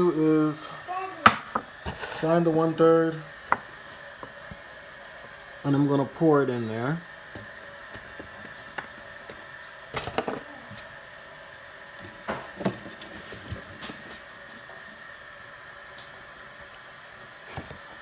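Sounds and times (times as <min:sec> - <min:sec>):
kitchen tap running: 0:00.0 - 0:18.0
kitchenware knocking: 0:01.2 - 0:02.2.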